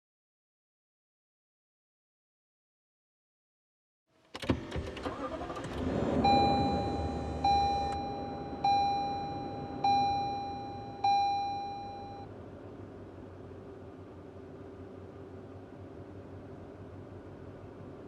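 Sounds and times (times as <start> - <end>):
car starter cranking: 4.4 - 11.2
car engine idling: 5.0 - 18.0
car warning chime dings: 6.2 - 12.3.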